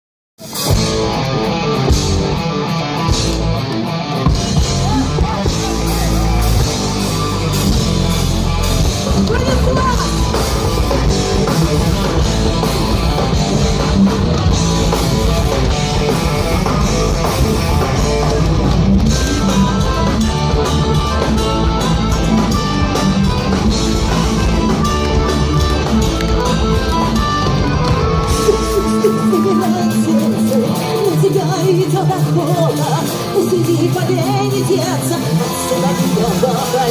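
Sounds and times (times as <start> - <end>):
bass guitar: 0.4 - 36.9
drum kit: 0.4 - 36.9
electric guitars: 0.4 - 36.9.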